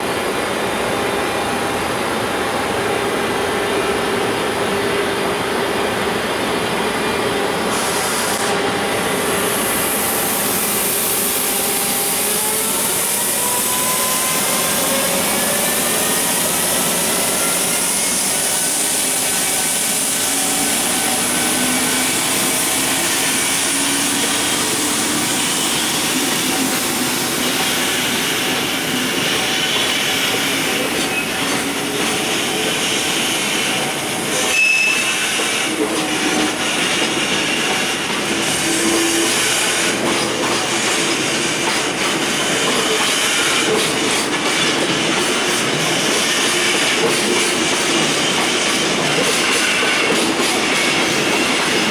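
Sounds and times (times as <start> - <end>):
electric locomotive motors whining: 6.6 - 51.9.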